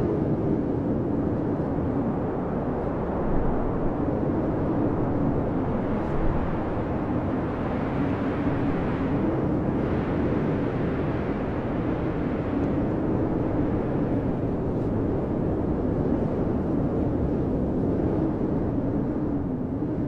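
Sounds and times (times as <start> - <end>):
blizzard wind howling: 0.0 - 20.0.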